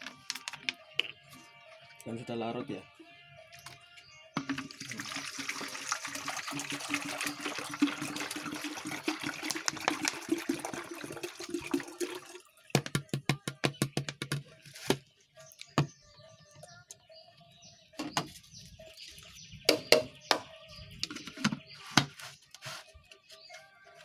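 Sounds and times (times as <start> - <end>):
water pouring into a drinker: 4.4 - 12.8.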